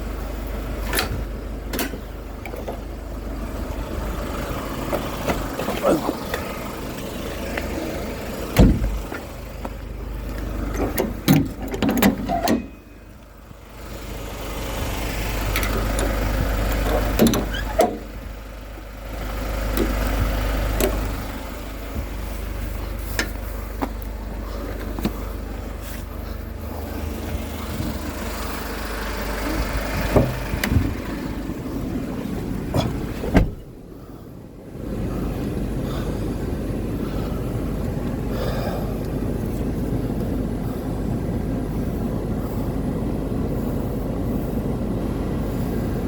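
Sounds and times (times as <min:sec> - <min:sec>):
low engine rumble: 0:00.0 - 0:46.0
firewood knocks and thuds: 0:08.6 - 0:09.8.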